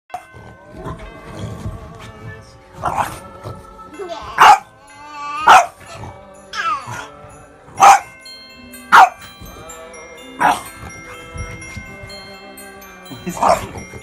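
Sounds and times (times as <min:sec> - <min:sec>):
background music with held notes: 0:00.1 - 0:14.0
dog barking: 0:04.4 - 0:04.7, 0:05.4 - 0:05.8, 0:07.8 - 0:08.1, 0:08.9 - 0:09.2.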